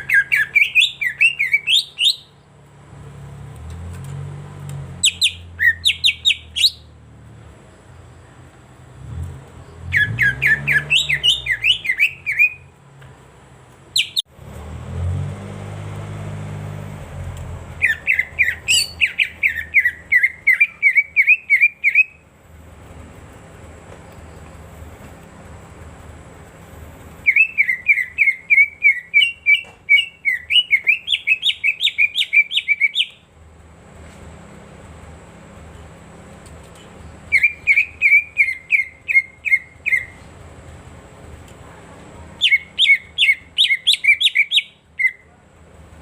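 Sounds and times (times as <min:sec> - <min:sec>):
bird chirping rapidly: 0:00.0 - 0:02.5, 0:05.0 - 0:07.0, 0:09.6 - 0:12.7, 0:13.9 - 0:14.3, 0:17.7 - 0:22.3, 0:27.2 - 0:33.3, 0:37.1 - 0:40.3, 0:42.4 - 0:45.3.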